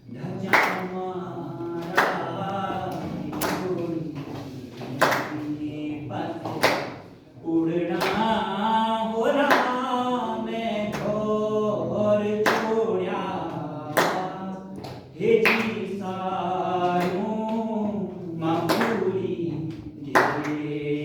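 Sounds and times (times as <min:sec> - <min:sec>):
sharp clap or beat: 0:00.4 - 0:01.0, 0:01.8 - 0:05.6, 0:06.4 - 0:07.1, 0:07.9 - 0:08.4, 0:09.4 - 0:09.8, 0:12.4 - 0:12.8, 0:13.6 - 0:16.0, 0:16.8 - 0:17.6, 0:18.5 - 0:20.8.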